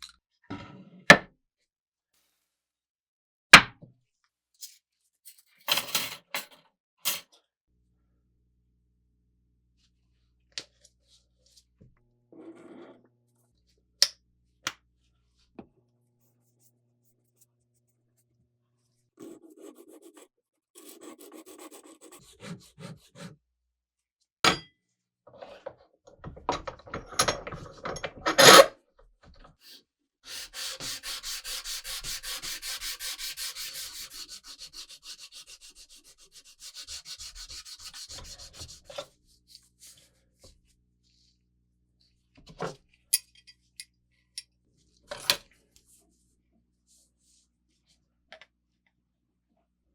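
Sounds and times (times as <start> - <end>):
hand sanding scraping strokes: 19.2 - 23.3, 30.3 - 38.9.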